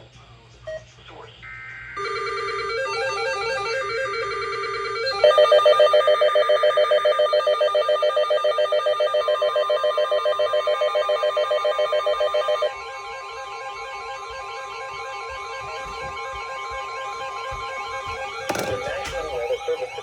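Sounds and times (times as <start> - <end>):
rapid pulsing alarm beep: 2.0 - 12.7.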